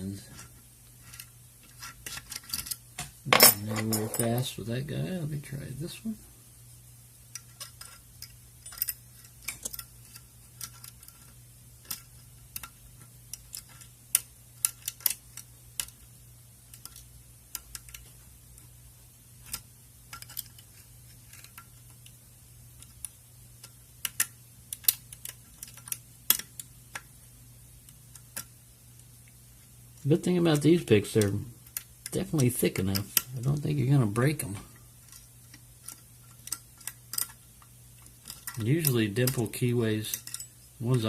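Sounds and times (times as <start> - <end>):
faint steady hum: 0.0 - 41.0
lock pick metallic clicks: 35.1 - 37.4, 40.1 - 40.6.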